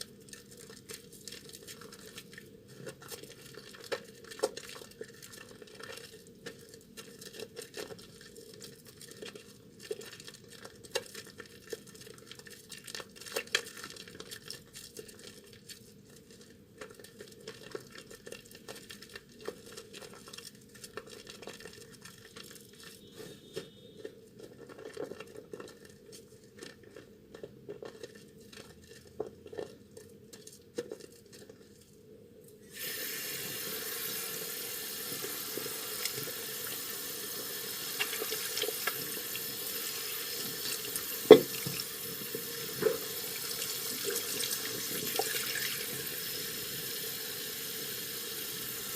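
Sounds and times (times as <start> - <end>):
hands lathering wet soap: 0.2 - 23.5, 32.7 - 47.0
tap water running: 32.7 - 48.9.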